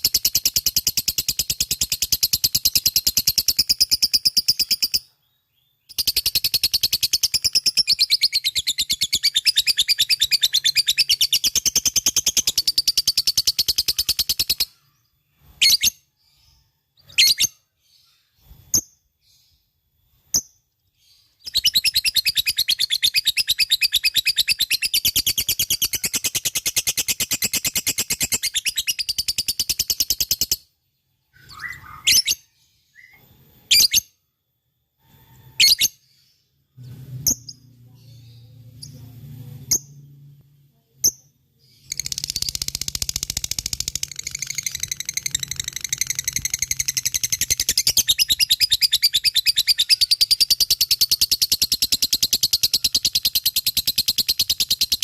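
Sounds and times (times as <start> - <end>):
lovebird rapid high chattering: 0.0 - 5.0, 5.9 - 14.8, 21.4 - 30.6, 41.8 - 55.0.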